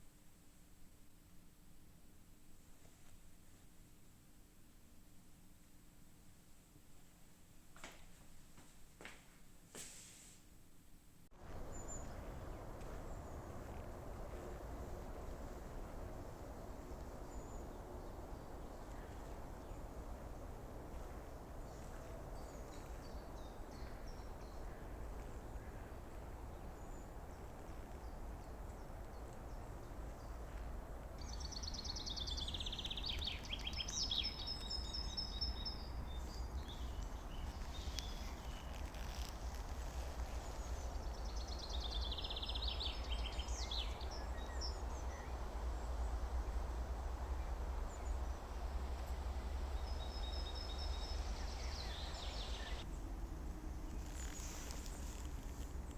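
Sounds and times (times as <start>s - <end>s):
small songbird singing: 11.4s - 52.9s
steady low rumble: 11.4s - 55.9s.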